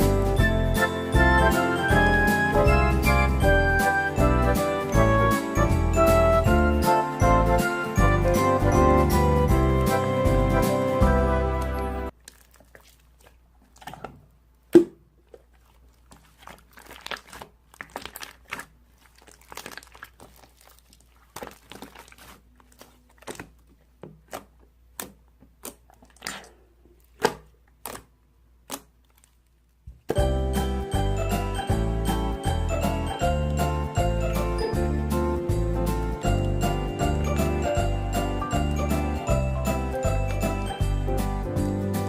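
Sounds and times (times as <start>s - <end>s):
background music: 0.0s - 12.1s, 30.1s - 42.0s.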